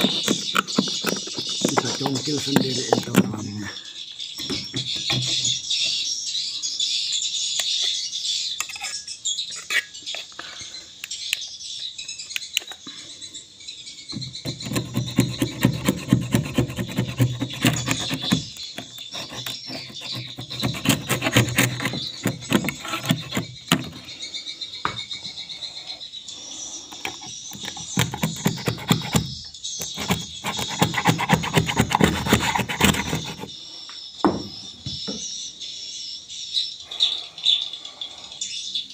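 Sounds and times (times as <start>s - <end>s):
tool scraping nests: 0.0s - 3.8s, 4.4s - 5.7s, 14.1s - 24.4s, 26.6s - 33.6s.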